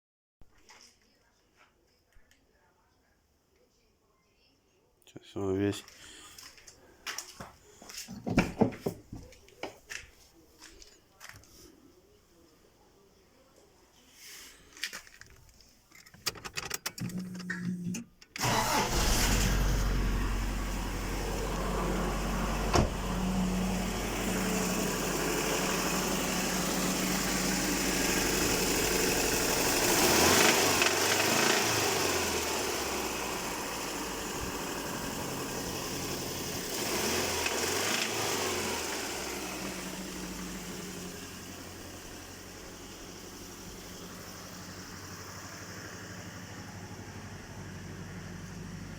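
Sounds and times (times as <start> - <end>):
engine cranking: 16.4 - 20.2, 27.0 - 40.6
engine running and revving: 18.6 - 48.9.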